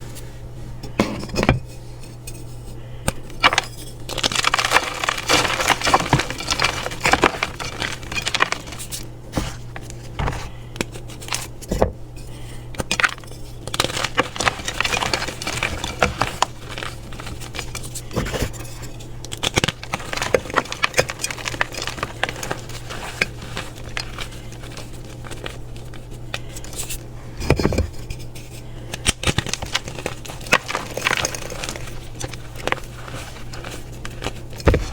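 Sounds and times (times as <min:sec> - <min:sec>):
steady low hum: 0:00.0 - 0:34.9
pressed powder blocks crunching: 0:02.8 - 0:34.9.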